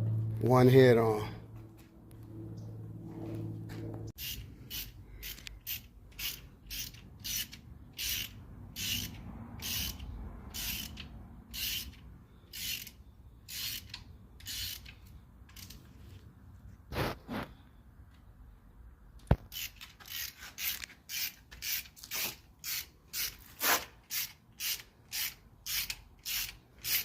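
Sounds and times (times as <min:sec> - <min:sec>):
ratchet wrench clicking: 0:04.2 - 0:15.8, 0:19.4 - 0:27.0.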